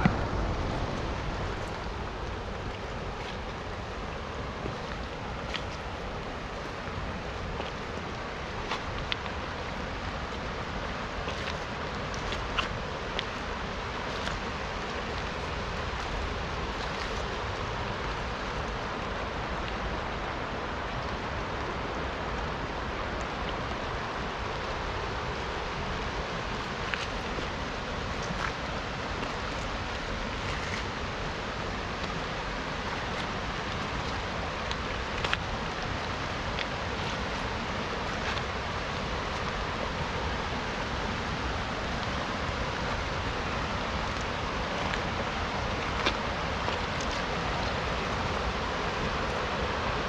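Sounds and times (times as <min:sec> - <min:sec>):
rain: 0:00.0 - 0:50.0
river water rushing: 0:00.0 - 0:50.0.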